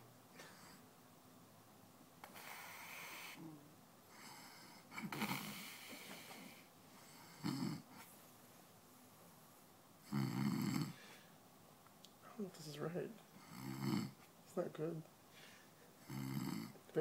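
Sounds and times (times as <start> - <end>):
soft breath: 2.2 - 8.4, 10.9 - 11.4, 15.3 - 15.9
man snoring: 4.2 - 5.9, 7.1 - 7.9, 10.1 - 11.0, 13.4 - 14.2, 16.0 - 16.8.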